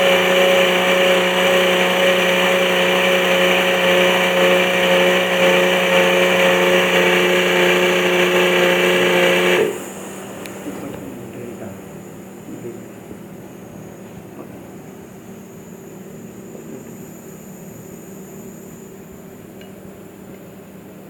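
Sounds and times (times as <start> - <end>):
pneumatic drill whine: 0.0 - 11.4, 13.5 - 19.5
hiss of air: 9.7 - 11.0.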